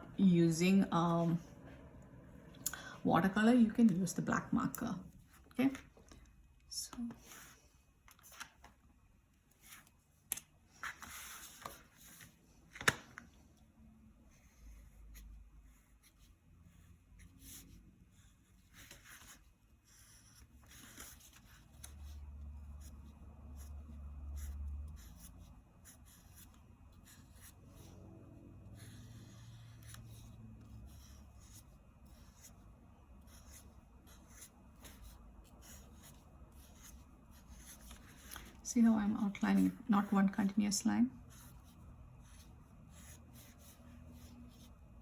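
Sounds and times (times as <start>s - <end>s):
marker scratching on paper: 14.3s - 28.1s, 28.7s - 44.9s.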